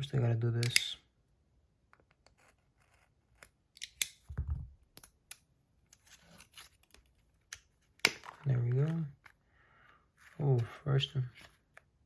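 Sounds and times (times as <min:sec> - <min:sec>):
scratching and handling noise: 0:02.0 - 0:03.6, 0:05.8 - 0:12.0.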